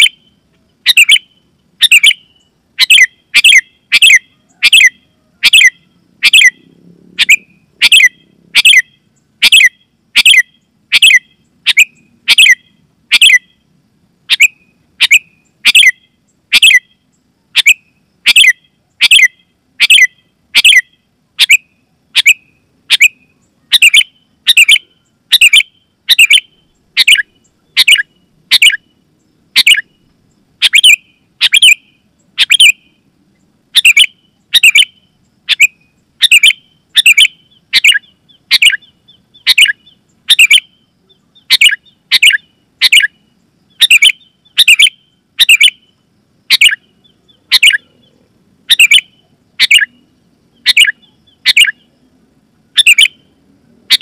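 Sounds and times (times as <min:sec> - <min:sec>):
bulbul chirping: 0:00.0 - 0:13.5, 0:14.3 - 0:16.9, 0:17.6 - 0:21.6, 0:22.2 - 0:28.9, 0:29.6 - 0:30.0, 0:30.6 - 0:32.8, 0:33.8 - 0:43.1, 0:43.7 - 0:45.8, 0:46.5 - 0:48.1, 0:48.7 - 0:50.0, 0:50.6 - 0:51.9, 0:52.8 - 0:53.3.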